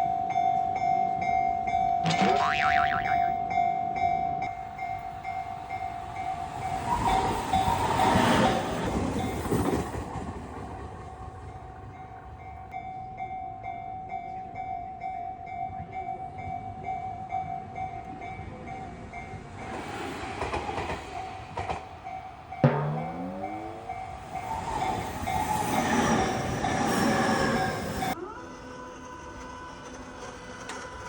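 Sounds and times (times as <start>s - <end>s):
train passing: 4.5s - 14.6s, 16.7s - 31.0s.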